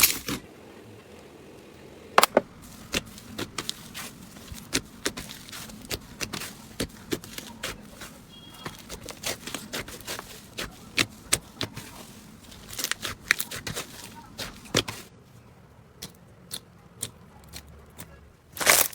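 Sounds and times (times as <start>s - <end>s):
slime squishing with wet clicks: 2.6s - 15.1s, 15.9s - 18.4s.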